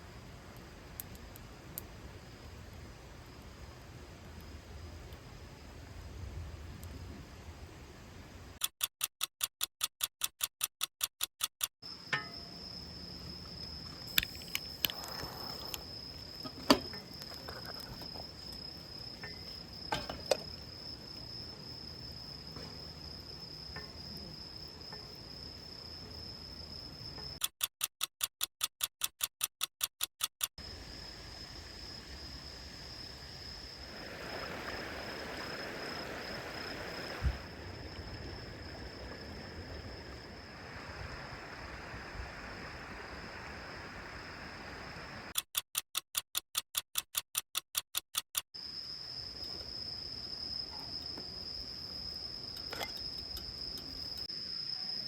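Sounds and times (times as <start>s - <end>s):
sharp clicks and knocks: 8.6s - 12.4s, 27.2s - 30.6s, 45.3s - 48.5s
insect trilling: 11.8s - 27.4s.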